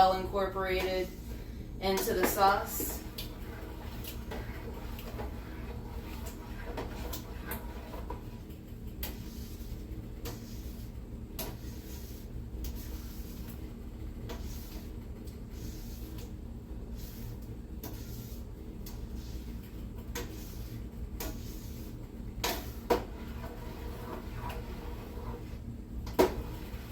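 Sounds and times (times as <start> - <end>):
steady low hum: 0.0 - 26.9
utensil scraping a pot: 1.9 - 8.3, 16.9 - 25.6, 26.2 - 26.9.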